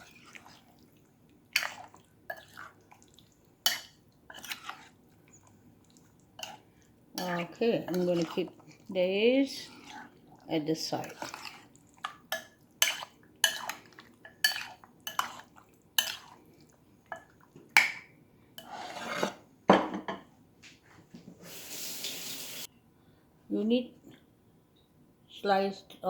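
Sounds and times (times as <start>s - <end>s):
dishes and utensils clinking: 18.6s - 20.3s.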